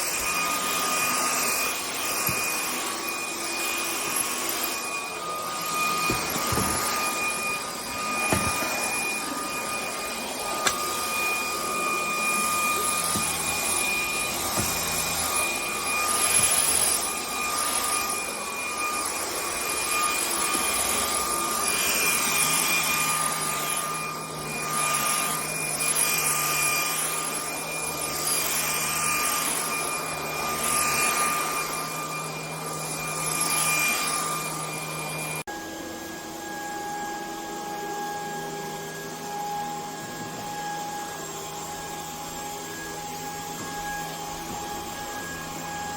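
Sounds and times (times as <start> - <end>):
vacuum cleaner motor whine: 0.0 - 45.9.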